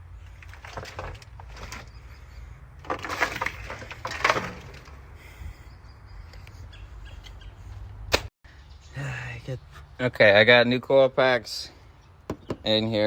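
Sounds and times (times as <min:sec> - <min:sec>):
crackling plastic handling noises: 0:00.2 - 0:02.2, 0:02.8 - 0:05.1.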